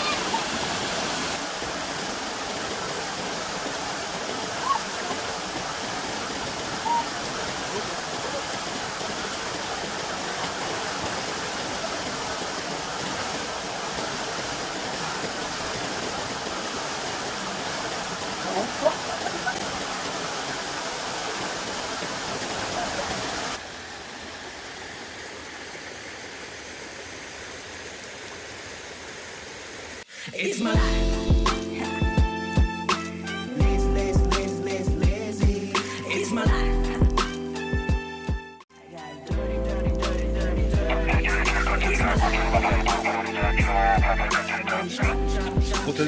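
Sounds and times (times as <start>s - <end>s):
stream rushing over rocks: 0.0s - 30.8s, 40.0s - 46.0s.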